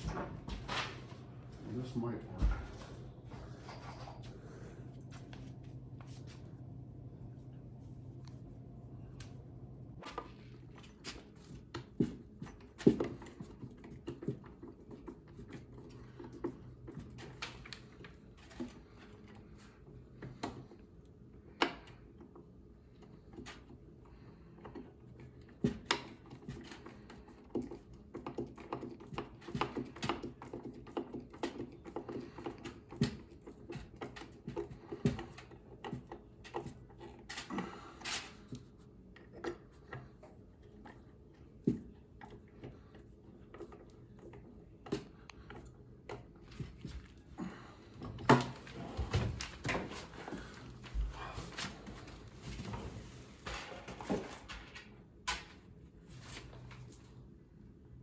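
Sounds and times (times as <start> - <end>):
faint low hum: 0.0 - 27.2
clicks taps and knocks of tools: 24.6 - 41.0.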